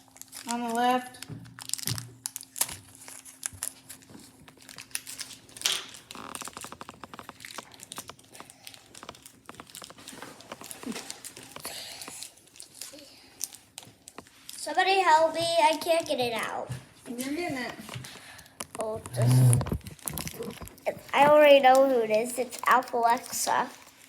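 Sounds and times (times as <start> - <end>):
wrapper tearing: 0.0 - 14.7, 18.4 - 24.0
toy packaging crinkling: 0.0 - 24.0.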